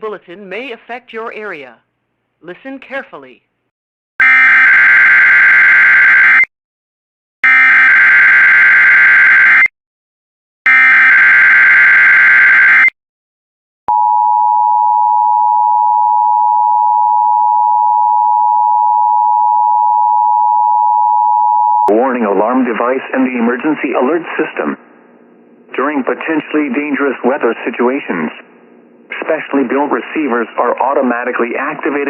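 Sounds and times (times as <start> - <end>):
steady attention tone: 13.9 - 32.0.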